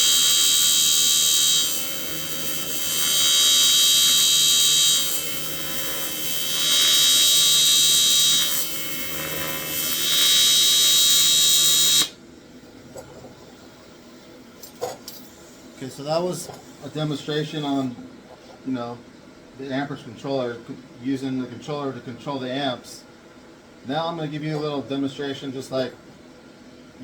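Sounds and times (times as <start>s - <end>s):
welding arc buzzing: 0.0s - 12.2s.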